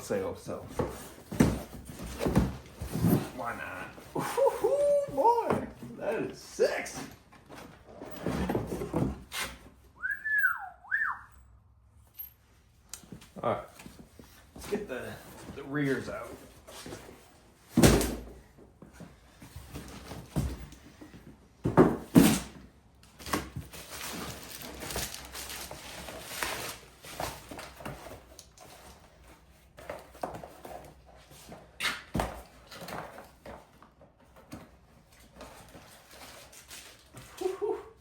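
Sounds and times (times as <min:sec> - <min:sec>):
packaging rustling: 0:23.2 - 0:27.5.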